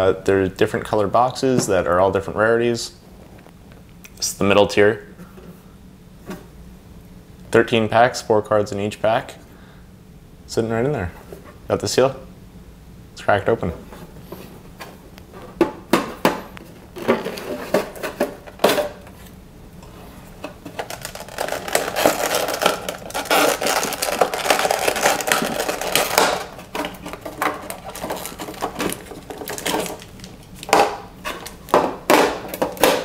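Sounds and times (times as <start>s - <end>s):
packaging crinkling and tearing: 20.6s - 31.7s.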